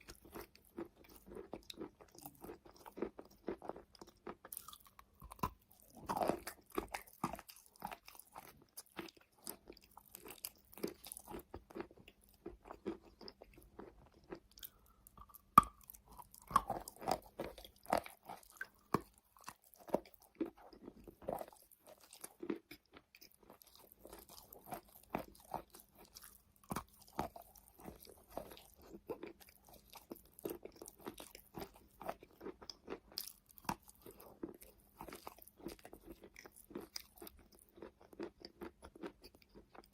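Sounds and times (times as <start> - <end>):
chewing soft wet chalk: 0.0 - 39.9.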